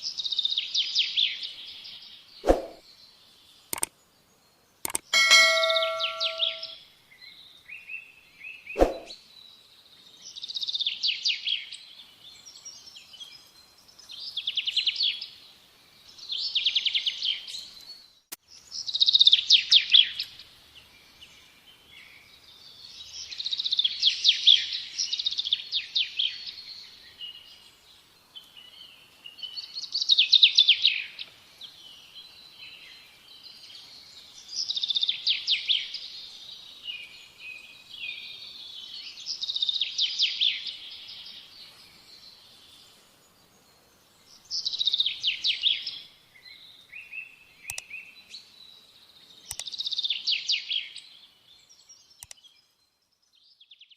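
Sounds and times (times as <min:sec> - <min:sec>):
songbird trilling: 0:04.9 - 0:06.8.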